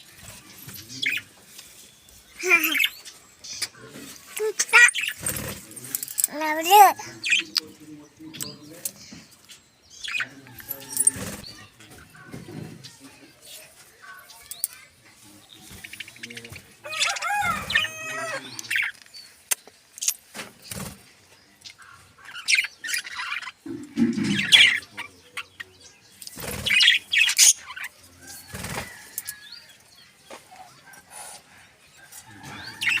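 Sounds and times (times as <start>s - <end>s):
small birds chirping: 0.0s - 33.0s
wings flapping: 5.1s - 5.8s, 20.4s - 21.1s, 26.3s - 26.9s, 28.5s - 29.0s.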